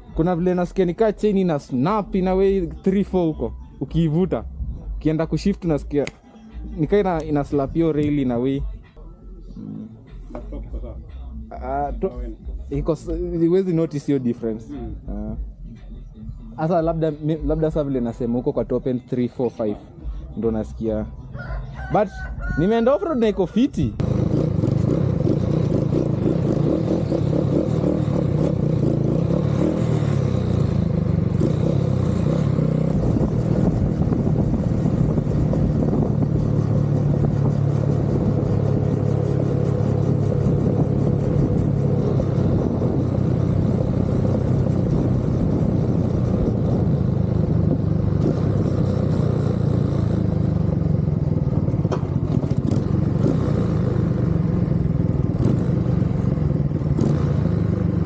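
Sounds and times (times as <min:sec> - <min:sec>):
motorcycle engine running: 0:24.0 - 0:58.0.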